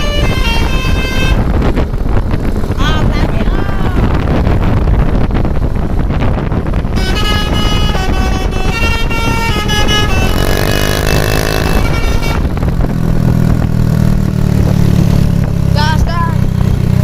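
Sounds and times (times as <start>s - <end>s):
bus horn playing a melody: 0.0s - 1.8s, 6.8s - 12.7s
bus engine rumble: 0.0s - 17.0s.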